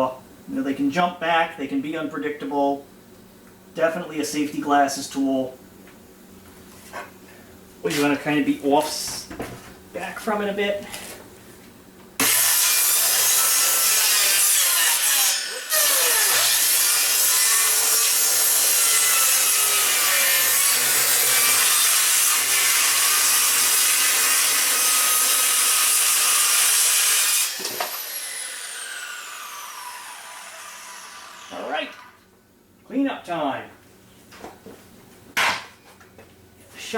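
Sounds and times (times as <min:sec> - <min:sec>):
circular saw cutting wood: 0:12.2 - 0:32.2
saw blade winding down: 0:12.2 - 0:32.2.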